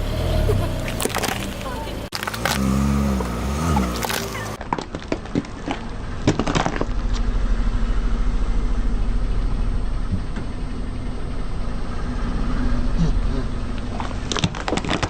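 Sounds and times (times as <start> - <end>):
car engine idling: 0.0 - 15.0
objects crunching under car: 0.2 - 7.5, 13.6 - 15.0.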